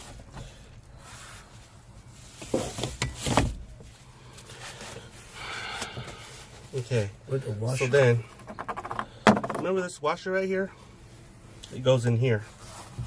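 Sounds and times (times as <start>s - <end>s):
knocks of parts: 8.4s - 9.7s.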